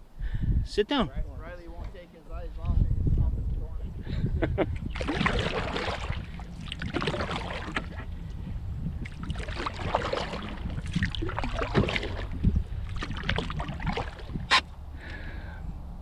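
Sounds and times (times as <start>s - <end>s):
wind rumble on microphone: 0.0s - 16.0s
water splashes: 4.7s - 14.7s
canoe knocking on water: 5.0s - 8.1s, 9.0s - 14.6s.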